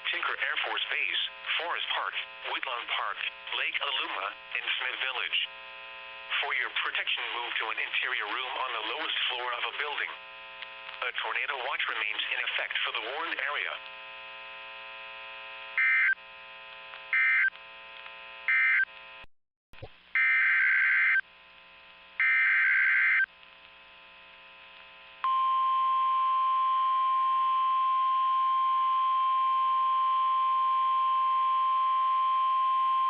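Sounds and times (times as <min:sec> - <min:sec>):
faint radio hum: 0:00.0 - 0:14.0
steady warning alarm tone: 0:15.8 - 0:16.2, 0:17.1 - 0:17.5, 0:18.5 - 0:18.9, 0:22.2 - 0:23.3.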